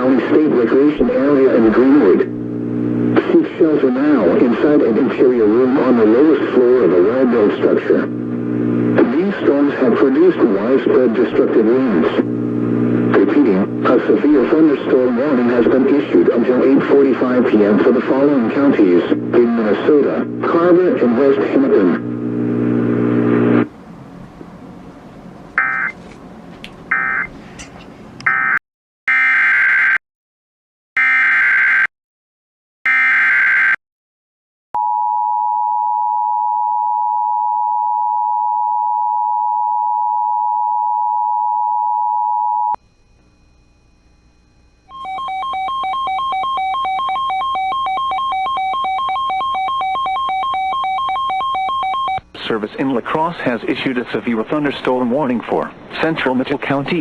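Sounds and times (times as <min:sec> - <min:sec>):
two-tone attention signal: 0:25.6 - 0:26.0, 0:26.9 - 0:27.3, 0:44.9 - 0:52.2
buzzing data bursts: 0:26.9 - 0:27.3
steady multi-pitch alert tone: 0:26.9 - 0:27.3, 0:44.9 - 0:52.2.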